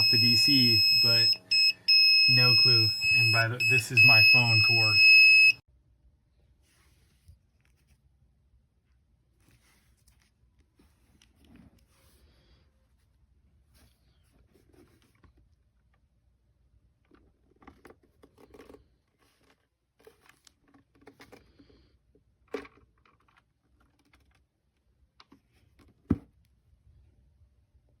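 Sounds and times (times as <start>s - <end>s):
handling rustles and clicks: 17.0s - 21.7s, 22.4s - 26.5s.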